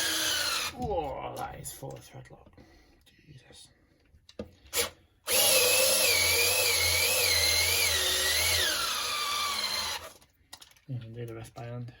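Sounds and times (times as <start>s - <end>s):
electric drill driving screw: 0.0s - 0.8s, 4.7s - 10.2s.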